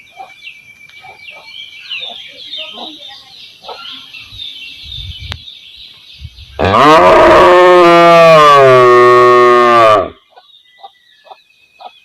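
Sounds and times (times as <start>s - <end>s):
cow mooing: 6.6s - 10.2s.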